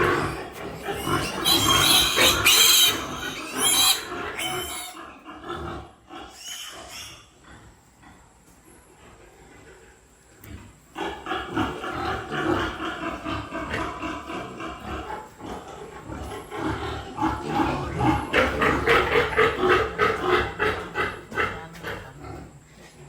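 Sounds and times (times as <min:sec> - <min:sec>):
piglets squealing: 0:00.0 - 0:05.0, 0:06.3 - 0:07.3.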